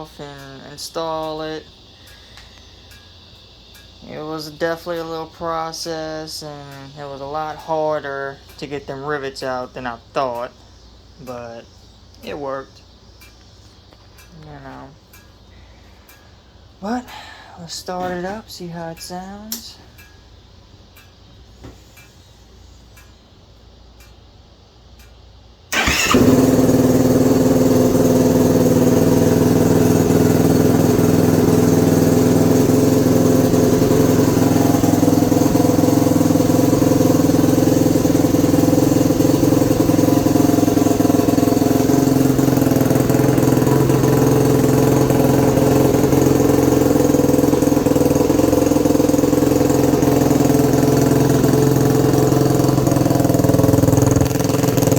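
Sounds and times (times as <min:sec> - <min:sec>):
engine ticks: 0:00.0 - 0:21.4, 0:22.9 - 0:54.9
quad engine starting and idling: 0:25.7 - 0:54.9.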